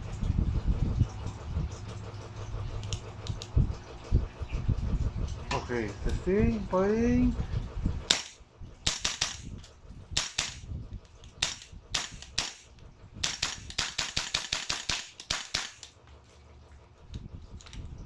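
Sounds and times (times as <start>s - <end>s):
airsoft rifle shots: 8.1s - 9.5s, 10.2s - 10.7s, 11.4s - 15.9s.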